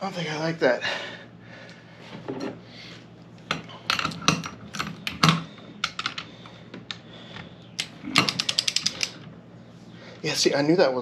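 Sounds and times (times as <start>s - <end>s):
hand tools clicking on metal: 7.8s - 9.2s.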